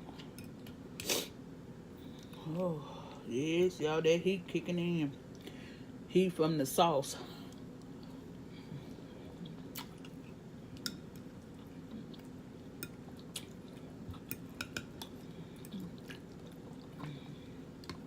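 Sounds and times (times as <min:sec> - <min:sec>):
steady low hum: 0:00.0 - 0:18.0
chewing with wet smacks: 0:08.8 - 0:18.0.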